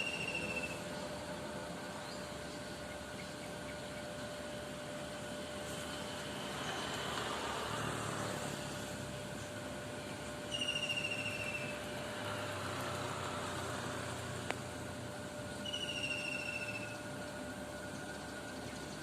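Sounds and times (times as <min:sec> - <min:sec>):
bird high trills: 0:00.0 - 0:01.0, 0:10.4 - 0:11.9, 0:15.6 - 0:17.1
steady background hiss: 0:00.0 - 0:19.0.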